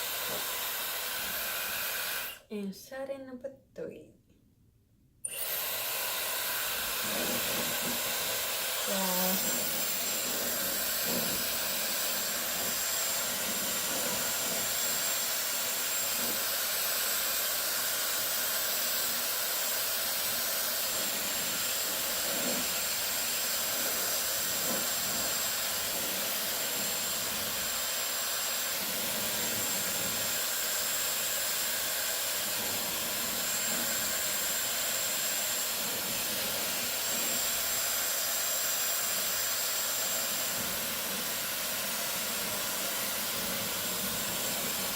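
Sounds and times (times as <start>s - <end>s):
hair dryer blowing: 0.0s - 2.5s, 5.2s - 44.9s.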